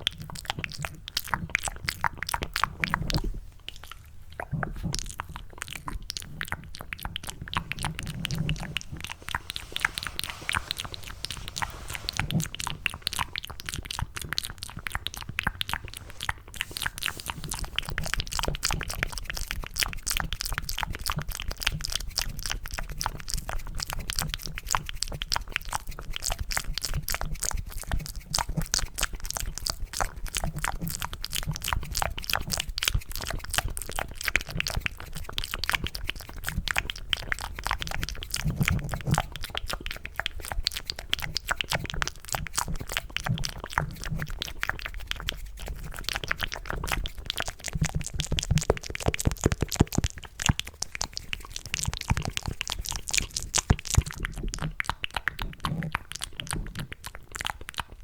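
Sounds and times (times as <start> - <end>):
wet mouth clicks and smacks: 12.6 - 58.0.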